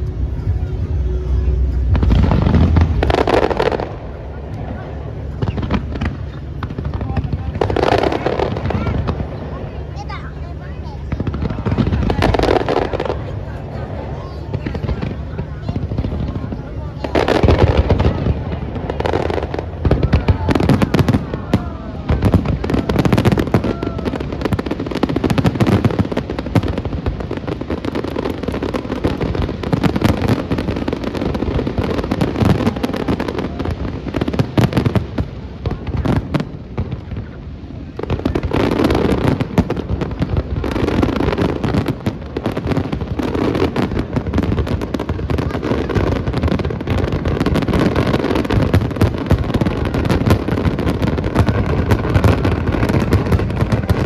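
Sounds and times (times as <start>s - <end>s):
fireworks bangs and crackles: 0.0s - 54.0s.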